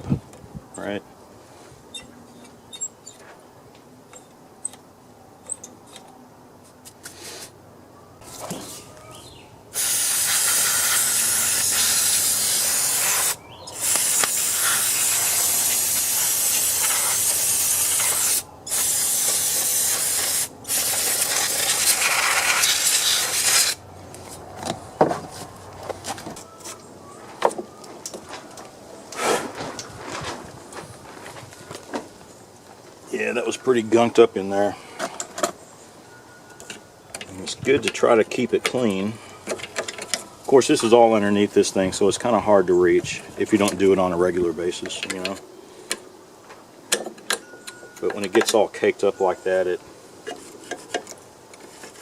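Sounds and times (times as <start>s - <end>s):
pressurized spray hissing: 9.8s - 23.8s.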